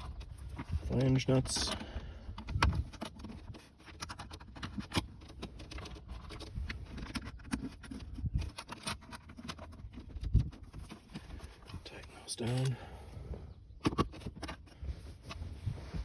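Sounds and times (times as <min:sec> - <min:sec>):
metal nuts clicking and scraping: 0:12.3 - 0:12.8.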